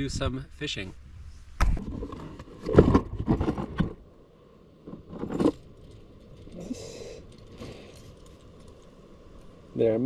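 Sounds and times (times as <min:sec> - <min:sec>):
fishing tackle rattling and clinking: 0:05.2 - 0:09.6.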